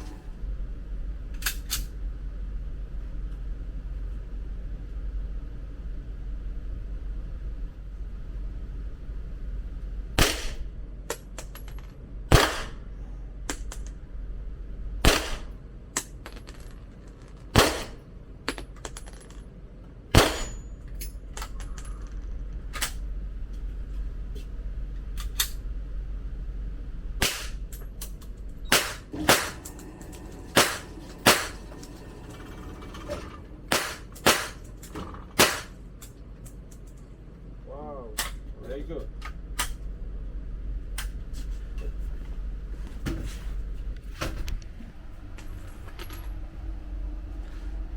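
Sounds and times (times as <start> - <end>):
gunshots: 10.2 - 10.6, 12.3 - 12.8, 15.0 - 15.5, 17.5 - 18.0, 20.2 - 20.6, 28.7 - 29.7, 30.5 - 31.6, 33.7 - 34.6, 35.4 - 35.8.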